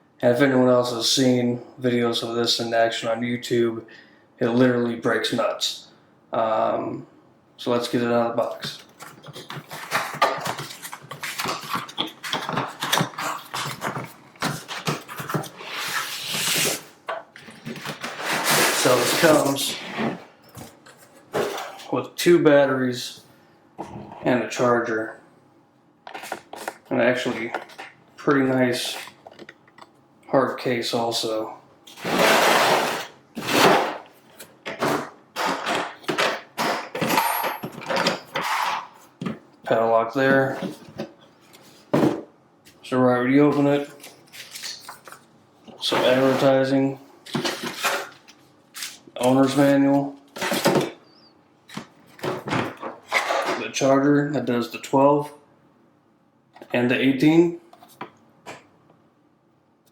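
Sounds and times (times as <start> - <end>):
cardboard scraping: 9.0 - 20.3, 31.9 - 34.0, 45.8 - 46.7.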